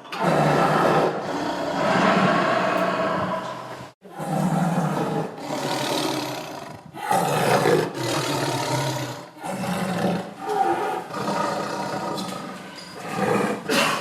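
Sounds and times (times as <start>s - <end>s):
tiger roaring: 0.0s - 14.0s.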